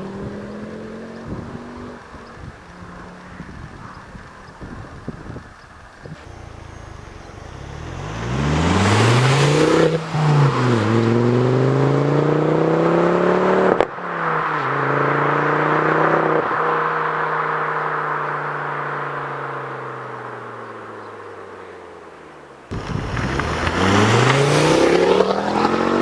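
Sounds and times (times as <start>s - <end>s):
car engine accelerating: 6.0s - 14.0s, 22.7s - 26.0s.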